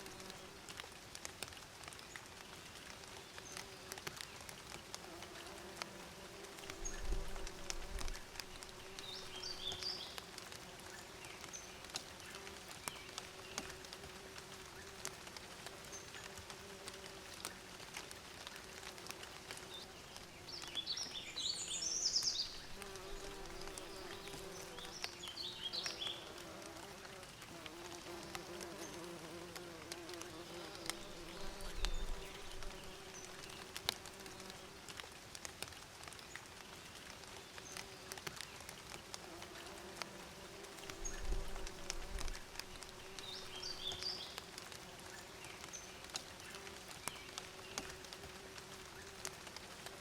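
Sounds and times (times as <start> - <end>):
birds chirping: 19.8 - 26.3, 40.8 - 44.4
bees buzzing: 21.8 - 34.5.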